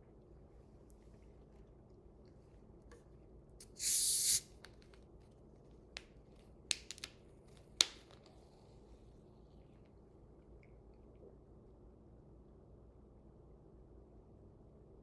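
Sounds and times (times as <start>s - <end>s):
carbonation hissing: 3.6s - 4.4s
can opening click: 3.6s - 4.5s.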